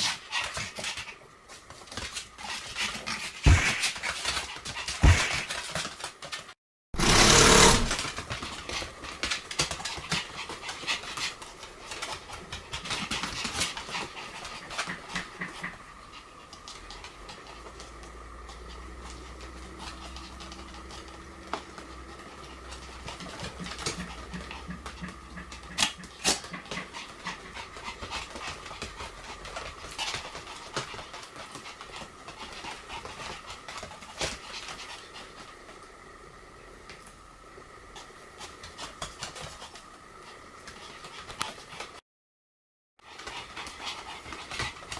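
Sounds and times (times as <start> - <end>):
dog panting: 0.0 - 6.0, 7.4 - 35.8, 43.0 - 44.9
loud burst of noise: 3.5 - 4.0, 7.0 - 8.0.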